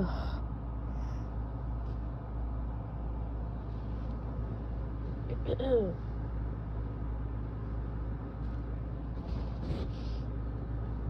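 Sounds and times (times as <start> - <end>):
low hum: 0.0 - 11.0.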